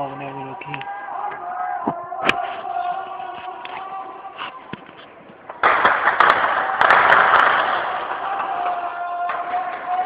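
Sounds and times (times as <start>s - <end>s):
gunfire cracks: 5.5s - 8.8s.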